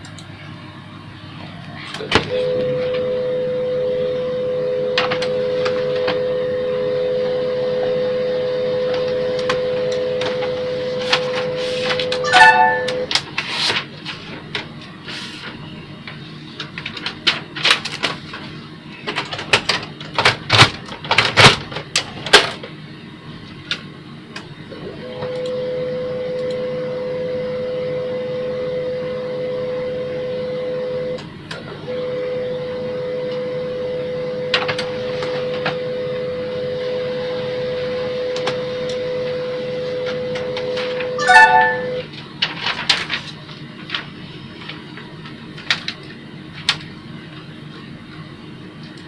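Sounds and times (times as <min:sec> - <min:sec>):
printer motor humming: 0:01.6 - 0:13.2
printer clicks and clacks: 0:19.1 - 0:22.7.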